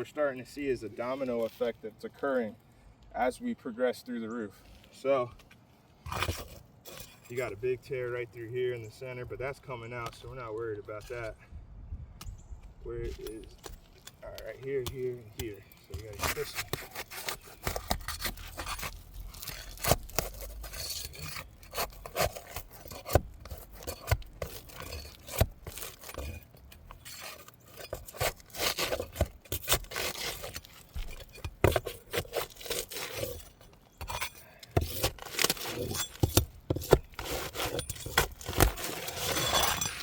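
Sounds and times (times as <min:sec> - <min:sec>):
roof shingle being pried loose: 0:13.4 - 0:40.0.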